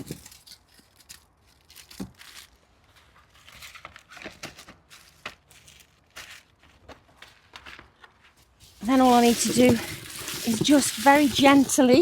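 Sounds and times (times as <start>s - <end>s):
packets crinkling: 8.6s - 12.0s.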